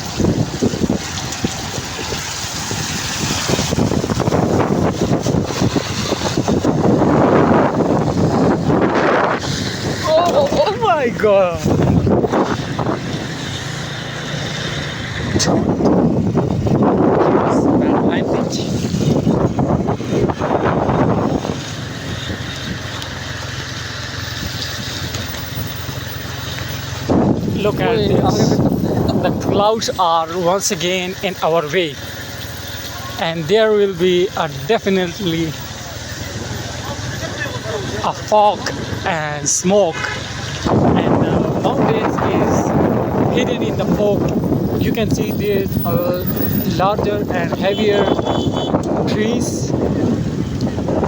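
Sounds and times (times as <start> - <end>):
wind buffeting microphone: 0.0 - 33.6, 34.2 - 51.0
vehicle engine and road noise: 0.0 - 51.0.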